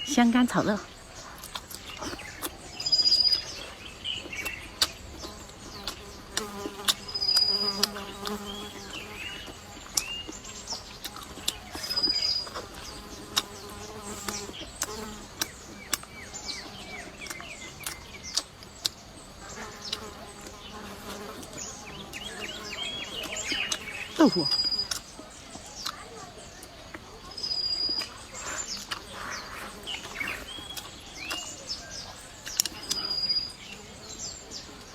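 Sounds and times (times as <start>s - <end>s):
fly buzzing: 4.5s - 15.5s, 19.4s - 24.9s.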